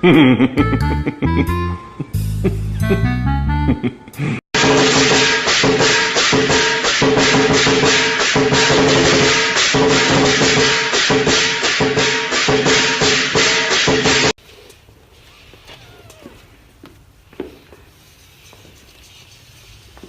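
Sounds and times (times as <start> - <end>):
music with fast percussion beat: 4.6 - 14.3.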